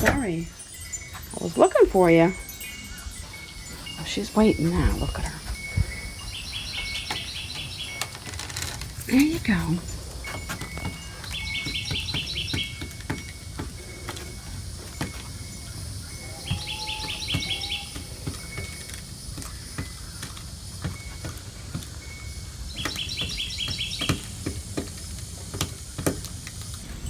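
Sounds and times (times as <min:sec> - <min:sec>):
bird chirping rapidly: 0:00.0 - 0:14.0, 0:15.4 - 0:20.4, 0:22.0 - 0:24.7.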